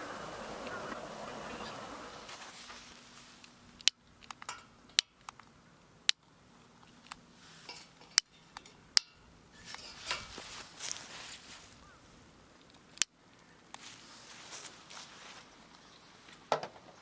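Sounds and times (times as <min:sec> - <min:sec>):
soft rustling: 0:00.0 - 0:03.8, 0:06.9 - 0:08.6, 0:09.6 - 0:16.5
camping gear clicking and clinking: 0:06.1 - 0:12.0.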